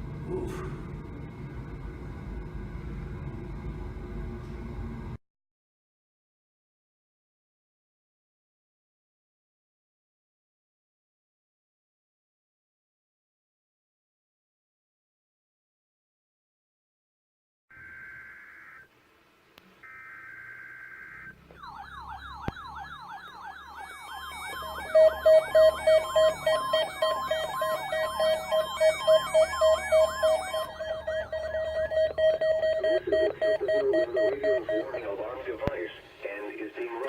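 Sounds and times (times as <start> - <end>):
rising and falling siren wails: 17.7 - 18.9, 19.8 - 35.0
loud pulsing beep: 19.9 - 35.4
beeping tones: 19.9 - 35.7
buzzy digital data bursts: 23.8 - 34.9.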